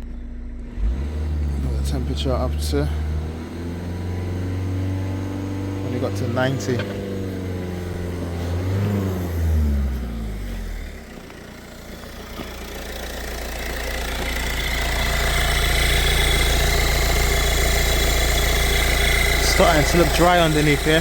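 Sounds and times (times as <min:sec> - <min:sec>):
diesel engine idling: 0:00.0 - 0:21.0
radiator cooling fan whirring: 0:12.6 - 0:21.0.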